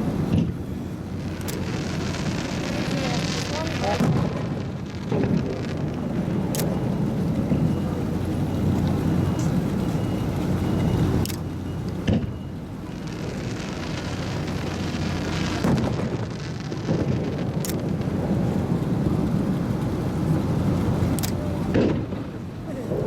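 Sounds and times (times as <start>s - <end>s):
fireworks crackling hiss: 0.0s - 7.1s, 12.5s - 23.0s
fireworks booming: 0.0s - 9.3s, 11.9s - 23.0s
fireworks sharp cracks: 0.2s - 6.8s, 12.9s - 18.5s, 21.7s - 22.4s.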